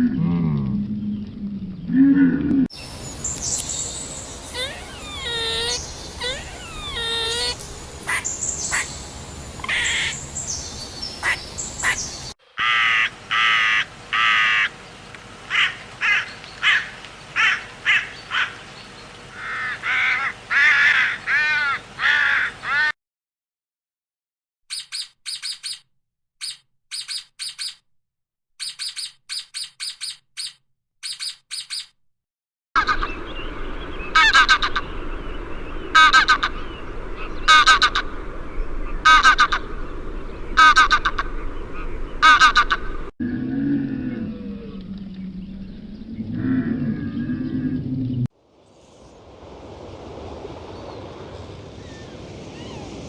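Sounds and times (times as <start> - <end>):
bird calls: 1.0 - 12.8, 32.8 - 43.1
thin high bird chirps: 2.7 - 12.4, 24.7 - 27.9, 28.6 - 32.0
harsh bird calls: 2.7 - 14.8, 32.8 - 43.1.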